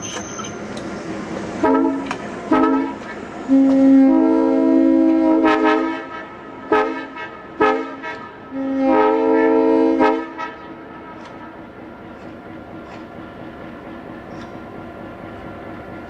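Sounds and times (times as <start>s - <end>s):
train rumble: 0.0s - 16.0s
locomotive air horn: 1.6s - 11.2s.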